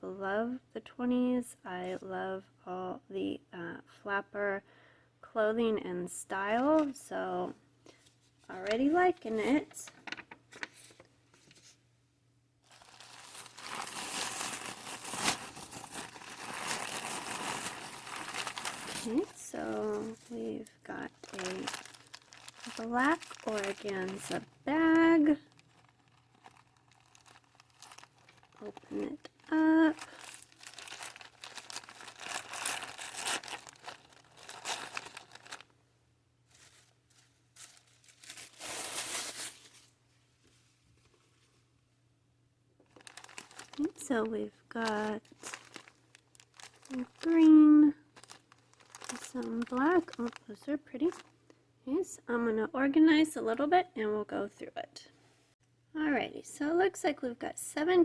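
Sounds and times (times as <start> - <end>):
packaging crinkling and rustling: 8.2 - 11.8, 12.6 - 35.7, 36.5 - 40.6, 42.8 - 51.3.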